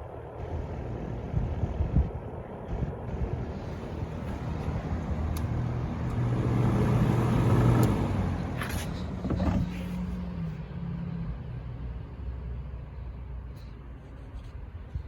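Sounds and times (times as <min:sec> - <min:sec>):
box fan running: 0:00.0 - 0:10.2.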